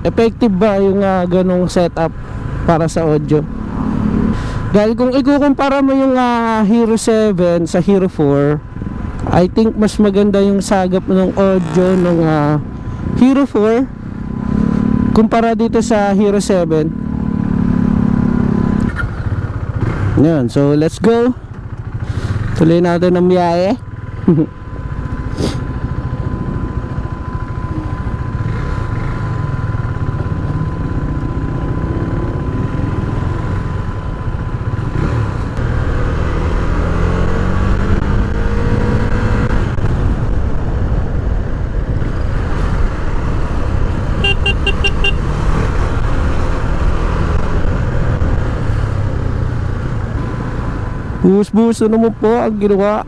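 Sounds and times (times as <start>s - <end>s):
motorcycle engine: 0.0s - 53.0s
wind rumble in helmet: 8.6s - 13.3s, 23.9s - 51.2s
vehicle horn: 43.9s - 45.5s.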